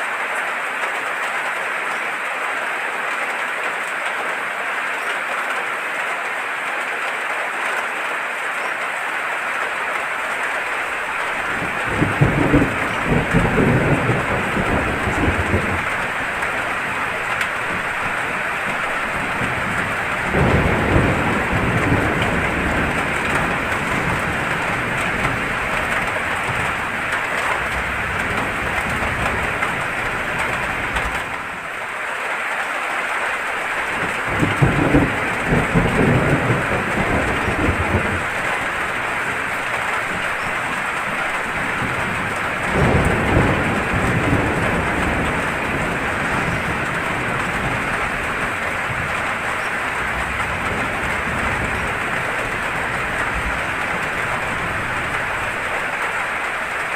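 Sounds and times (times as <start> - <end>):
heavy rain: 0.0 - 56.9
rolling thunder: 10.8 - 31.8, 33.6 - 56.9.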